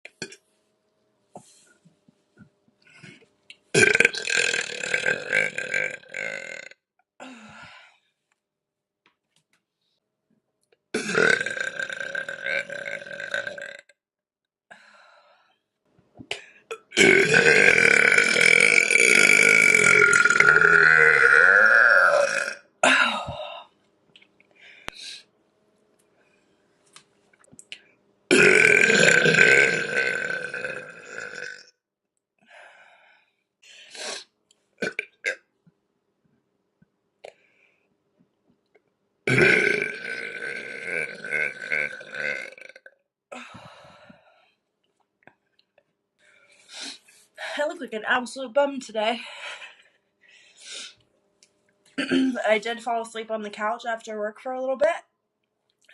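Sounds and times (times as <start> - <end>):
woman burping loudly: 3.7 - 6.8, 10.9 - 14.0, 16.7 - 23.4, 28.3 - 31.7, 34.8 - 35.5, 39.3 - 43.5, 52.0 - 52.4.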